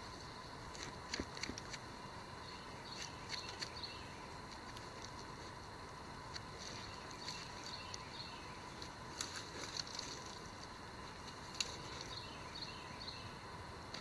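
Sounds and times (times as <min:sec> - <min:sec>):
faint outdoor background: 0:00.0 - 0:14.0
scratching and small clicks: 0:00.6 - 0:01.9.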